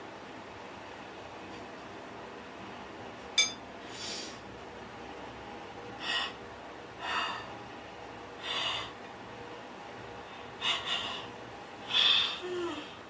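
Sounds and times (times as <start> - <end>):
person breathing in noisy puffs: 3.8 - 4.4, 6.0 - 6.4, 7.0 - 7.5, 8.4 - 9.0, 10.2 - 13.0.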